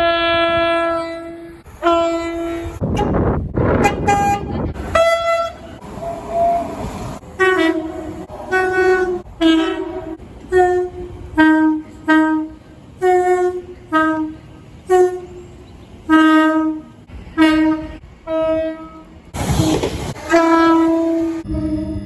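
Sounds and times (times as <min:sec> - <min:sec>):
train horn blasts: 0:00.0 - 0:06.8, 0:07.4 - 0:22.0.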